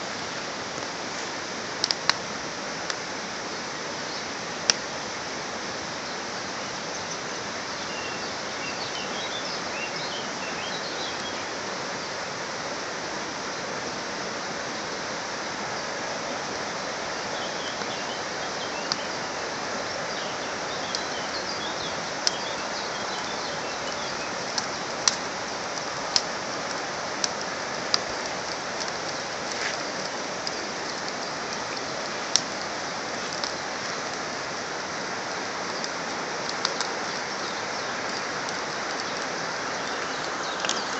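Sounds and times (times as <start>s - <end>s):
campfire flames hissing: 0.0s - 40.9s
birds chirping: 3.5s - 12.4s, 15.4s - 40.9s
wood popping and cracking: 24.5s - 34.2s.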